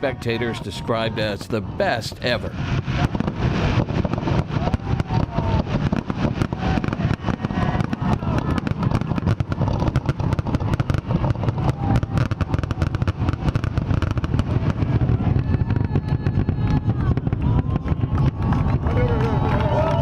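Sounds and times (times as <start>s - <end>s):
firework bangs and crackles: 0.0s - 20.0s
deep rumble: 1.6s - 20.0s
firework whistles: 2.4s - 17.0s.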